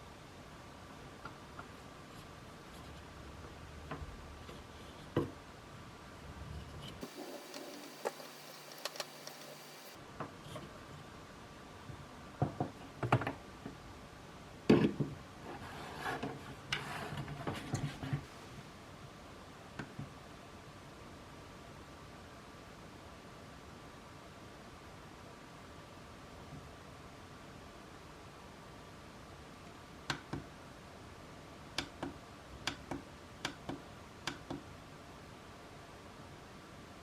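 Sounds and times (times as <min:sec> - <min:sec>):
small objects being handled: 0:07.0 - 0:10.0.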